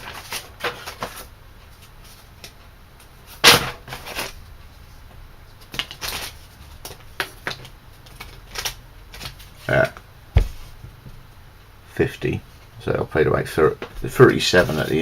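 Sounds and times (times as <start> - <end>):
cardboard rustling: 3.2 - 4.9, 13.8 - 15.0.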